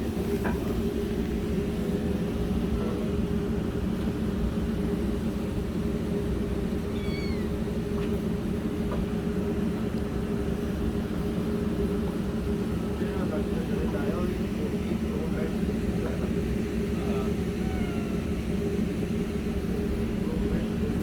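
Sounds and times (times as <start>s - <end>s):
kitten meowing: 6.9s - 7.6s, 17.5s - 18.4s.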